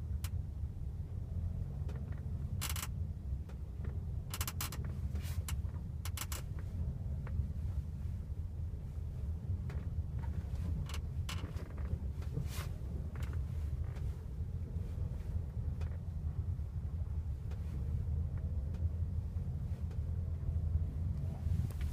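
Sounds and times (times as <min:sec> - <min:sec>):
car road and engine rumble: 0:00.0 - 0:21.9
car suspension squeaking: 0:02.6 - 0:03.0.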